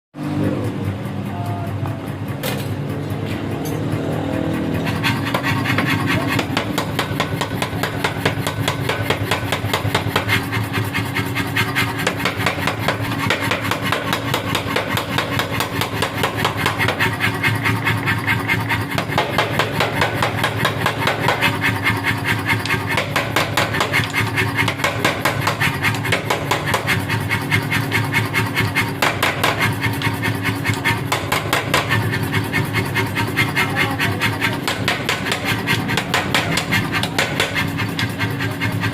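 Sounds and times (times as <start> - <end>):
machine hum: 0.2 - 38.9
power hammer striking iron: 2.1 - 38.9.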